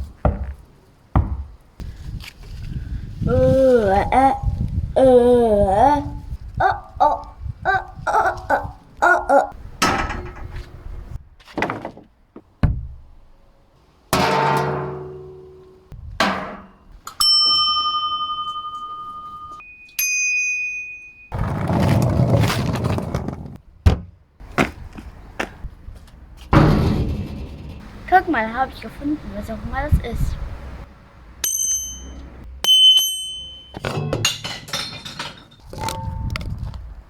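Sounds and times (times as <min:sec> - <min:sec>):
objects knocking and thunking: 0:09.8 - 0:13.0, 0:33.7 - 0:36.8
bright metallic ringing tones: 0:17.2 - 0:21.4, 0:31.4 - 0:33.9
rough noise: 0:26.4 - 0:28.3.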